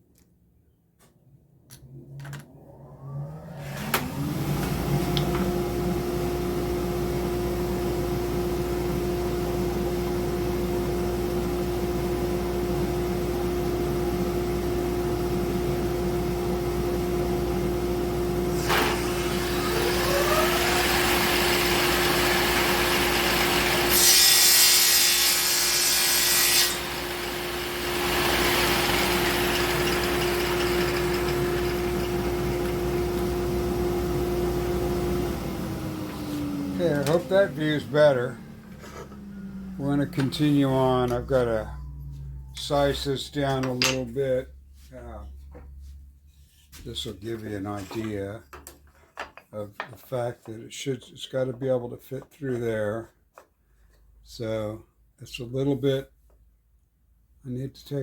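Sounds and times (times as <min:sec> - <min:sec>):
woodworking machine motor humming: 0:02.8 - 0:41.6
saw cutting into wood: 0:18.5 - 0:32.9.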